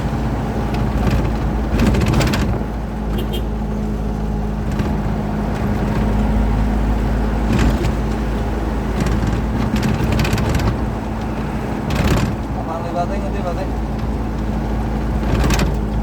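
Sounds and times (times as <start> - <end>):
truck engine droning: 0.0 - 16.0
clicking rattles: 0.6 - 3.2, 7.4 - 12.6, 13.7 - 16.0.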